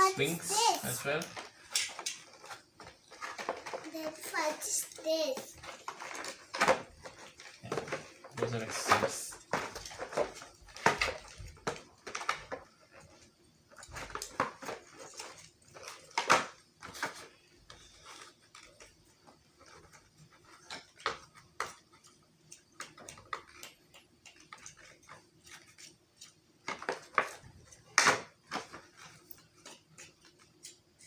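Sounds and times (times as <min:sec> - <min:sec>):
plastic packaging handled: 0:05.6 - 0:13.1.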